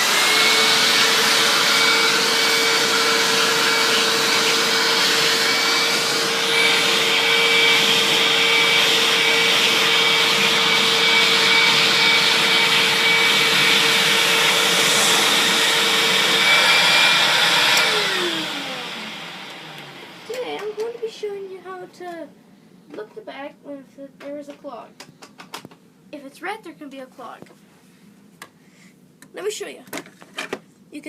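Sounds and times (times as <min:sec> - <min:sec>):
vacuum cleaner running: 0:00.0 - 0:22.1.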